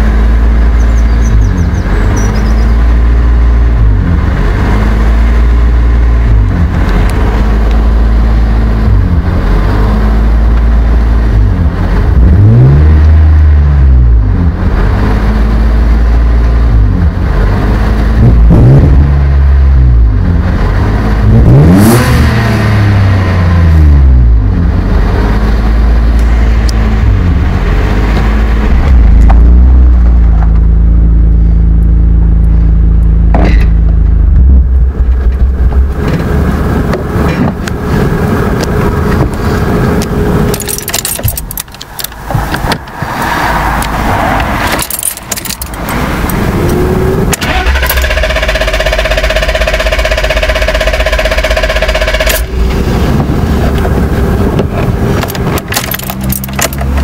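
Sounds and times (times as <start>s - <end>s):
car engine surging idle: 0.0s - 9.6s, 44.6s - 57.0s
keys rattling: 40.5s - 42.2s, 44.6s - 46.4s, 55.2s - 57.0s
starter motor cranking: 47.3s - 52.5s.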